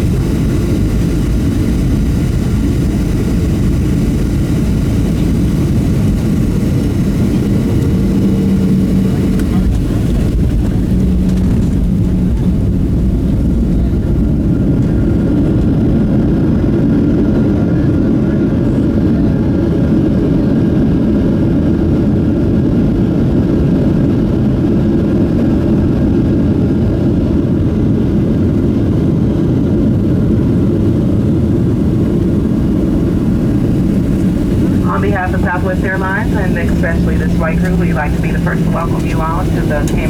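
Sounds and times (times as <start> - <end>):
jet engines and wheels rumbling: 0.0 - 40.0
faint steady whine: 30.1 - 40.0.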